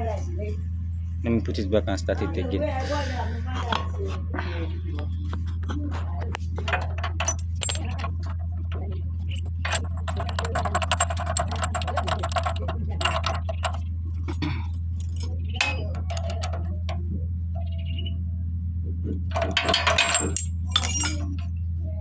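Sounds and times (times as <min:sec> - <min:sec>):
steady low hum: 0:00.0 - 0:22.0
metal tool clinking: 0:06.6 - 0:14.4, 0:15.0 - 0:17.0, 0:19.3 - 0:21.5.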